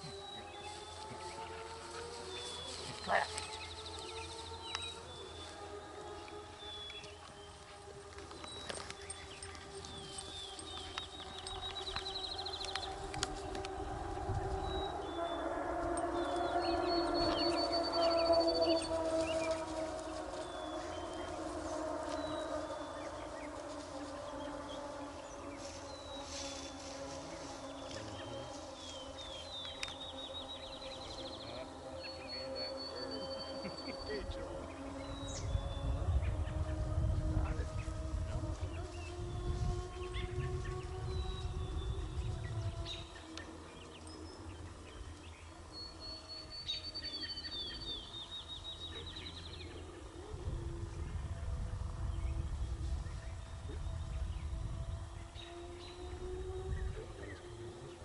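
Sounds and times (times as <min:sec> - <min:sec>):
low rumble: 0:00.0 - 0:32.4, 0:47.7 - 0:58.0
low drone: 0:00.0 - 0:58.0
songbirds chirping: 0:00.0 - 0:58.0.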